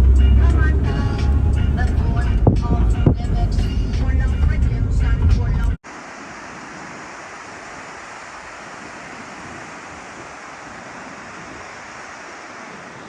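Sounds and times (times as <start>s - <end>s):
river water rushing: 0.0s - 2.4s, 5.8s - 13.0s.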